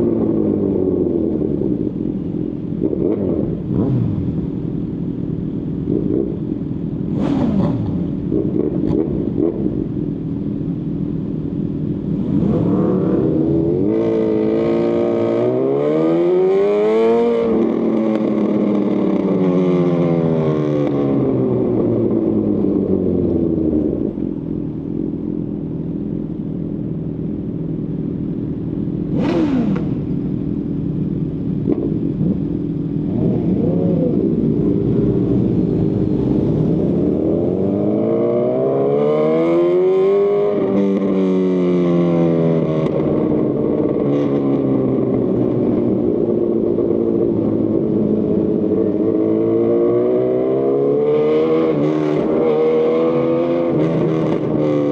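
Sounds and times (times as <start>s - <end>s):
motorcycle engine revving: 0.0s - 10.0s, 28.9s - 54.9s.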